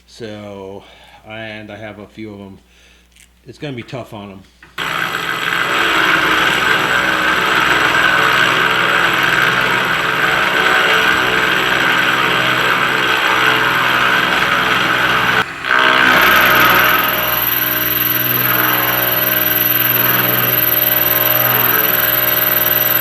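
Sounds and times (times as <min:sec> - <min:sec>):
milling machine cutting steel: 0:04.8 - 0:23.0.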